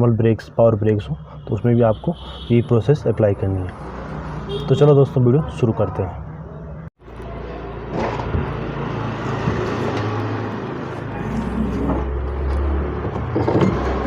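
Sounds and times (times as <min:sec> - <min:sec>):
motor vehicle humming: 0:06.2 - 0:14.0.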